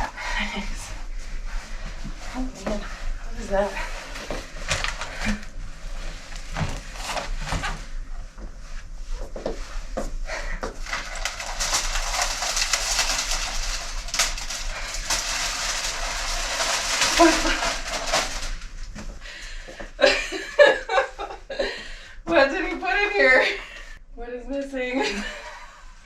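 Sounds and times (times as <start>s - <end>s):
steady rustling hiss: 0.0s - 21.9s.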